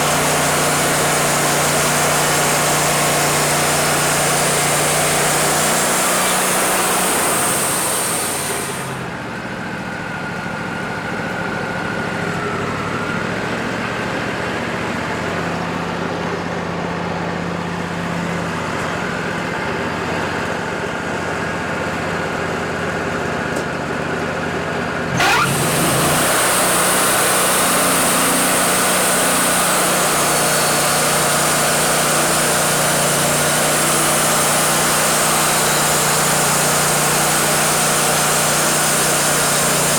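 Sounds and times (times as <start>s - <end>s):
rising whine of blade starting: 0.0s - 9.1s, 25.1s - 39.9s
sawmill engine running: 0.0s - 13.9s, 24.2s - 39.9s
saw blade hissing: 0.4s - 9.0s, 25.1s - 39.9s.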